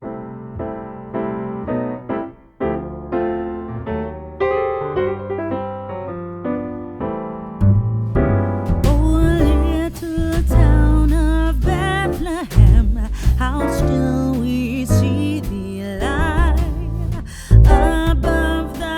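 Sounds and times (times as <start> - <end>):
piano notes: 0.0 - 18.9
person singing: 8.9 - 18.9.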